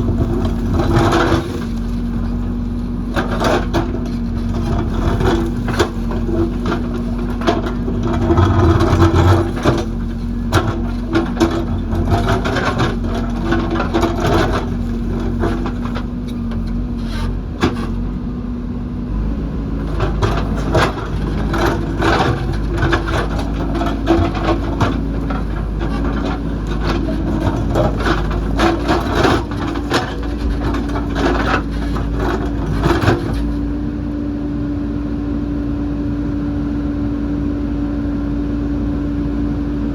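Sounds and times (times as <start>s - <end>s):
bucket knocking and scraping rock: 0.0s - 18.0s, 19.8s - 33.6s
diesel engine running under load: 0.0s - 39.9s.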